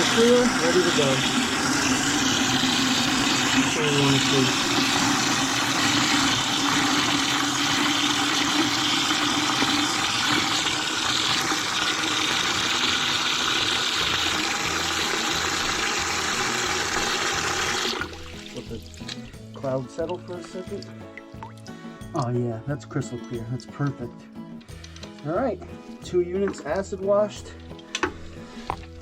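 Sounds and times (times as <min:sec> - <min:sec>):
water rushing into bucket: 0:00.0 - 0:21.8.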